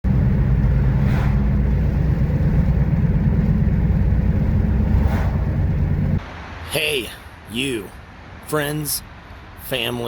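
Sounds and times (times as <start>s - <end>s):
car rumbling: 0.0s - 10.0s
rushing sound: 0.1s - 7.2s.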